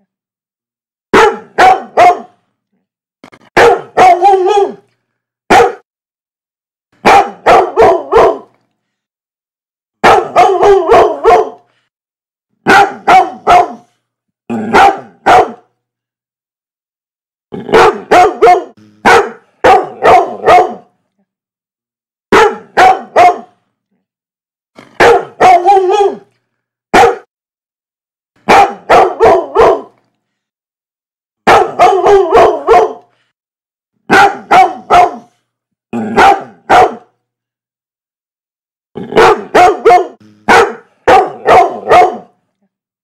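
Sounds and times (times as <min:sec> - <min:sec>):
dog barking: 0:01.1 - 0:02.4, 0:03.6 - 0:04.8, 0:05.5 - 0:05.9, 0:07.0 - 0:08.6, 0:10.0 - 0:11.7, 0:12.6 - 0:13.9, 0:14.7 - 0:15.7, 0:17.6 - 0:20.9, 0:22.3 - 0:23.6, 0:25.0 - 0:26.3, 0:26.9 - 0:27.3, 0:28.4 - 0:30.0, 0:31.4 - 0:33.1, 0:34.1 - 0:35.4, 0:36.0 - 0:37.2, 0:39.1 - 0:42.4.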